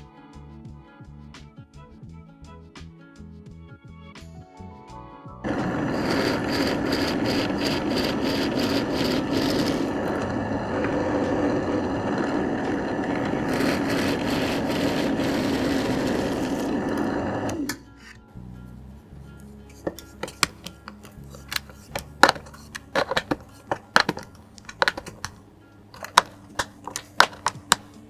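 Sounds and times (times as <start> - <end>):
repeated rasping: 5.5 - 10.3
power tool motor running: 5.5 - 17.7.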